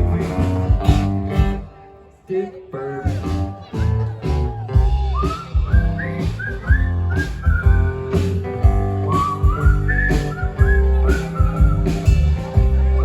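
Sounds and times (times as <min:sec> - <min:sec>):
band playing instrumental: 0:00.0 - 0:02.1, 0:03.1 - 0:13.0
whistled melody: 0:04.8 - 0:13.0.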